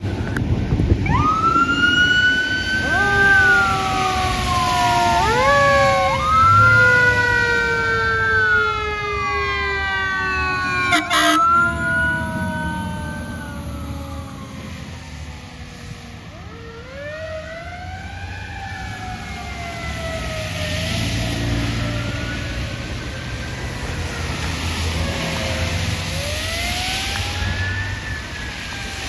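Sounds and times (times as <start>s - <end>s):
siren wailing: 0.9s - 29.0s
truck horn honk: 10.9s - 11.5s.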